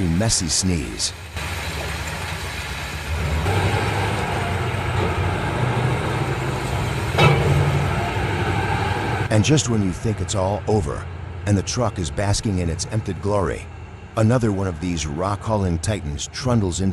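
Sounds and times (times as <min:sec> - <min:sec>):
diesel truck engine running: 0:01.1 - 0:16.9.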